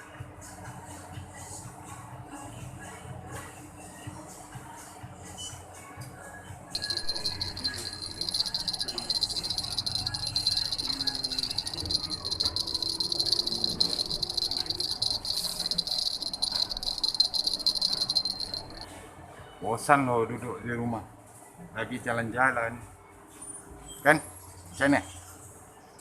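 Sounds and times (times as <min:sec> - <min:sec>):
insects trilling: 0:06.8 - 0:18.8.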